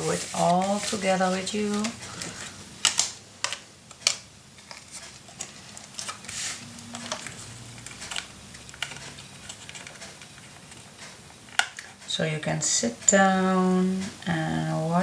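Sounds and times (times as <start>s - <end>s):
paper rustling: 0.0s - 11.0s
crafting tools clicking and tapping: 6.8s - 12.1s.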